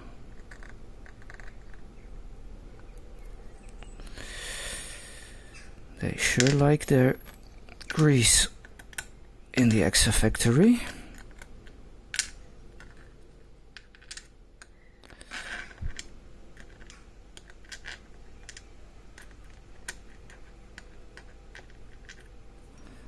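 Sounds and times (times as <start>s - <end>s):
small metal lock parts clicking: 0.3s - 1.8s, 6.4s - 9.8s, 10.8s - 13.1s, 13.8s - 22.4s.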